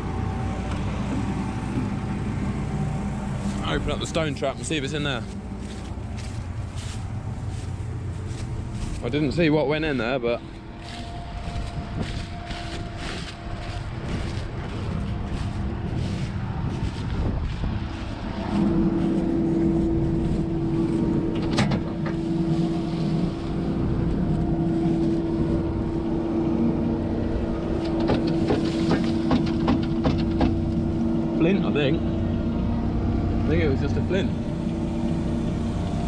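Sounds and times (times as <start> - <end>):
combine harvester drone: 0.0 - 36.0
sharp knocks: 28.0 - 30.7.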